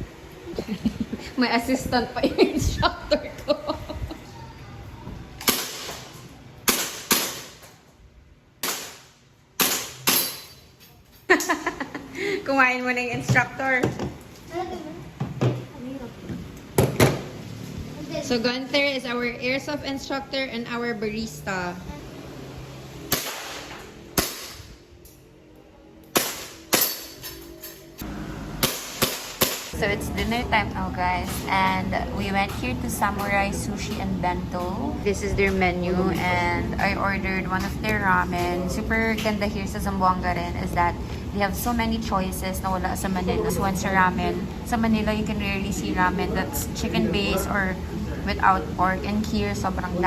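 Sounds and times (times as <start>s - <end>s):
airsoft gun shots: 6.7s - 7.6s, 8.6s - 10.3s, 23.1s - 24.6s, 28.6s - 29.7s
faint background music: 17.4s - 50.0s.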